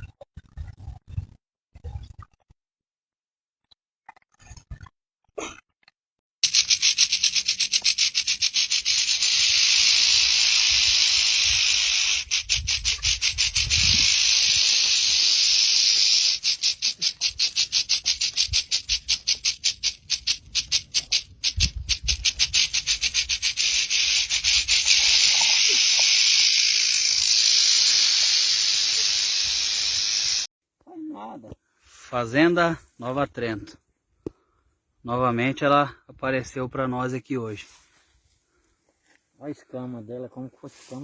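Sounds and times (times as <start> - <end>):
pulsing high-pitched hiss: 6.4 - 30.5.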